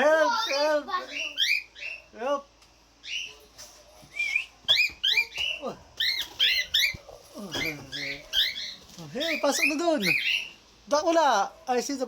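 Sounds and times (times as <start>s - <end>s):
cockatiels chirping: 0.2s - 2.2s, 3.0s - 10.6s.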